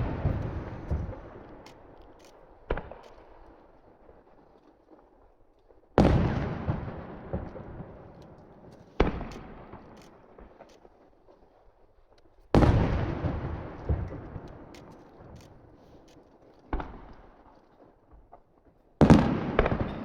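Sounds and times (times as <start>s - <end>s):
firework shells booming: 0.0s - 3.4s, 6.0s - 10.7s, 12.6s - 16.0s, 19.0s - 20.0s
small firework pops: 0.0s - 20.0s.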